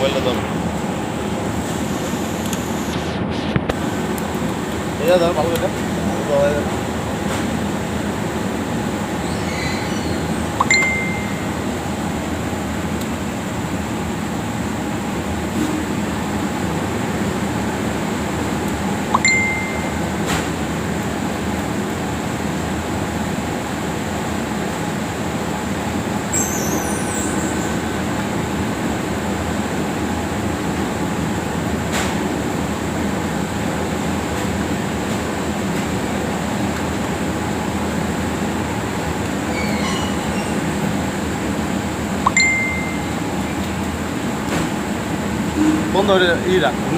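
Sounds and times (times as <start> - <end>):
steady machine hum: 10.2 - 26.2, 40.6 - 46.9.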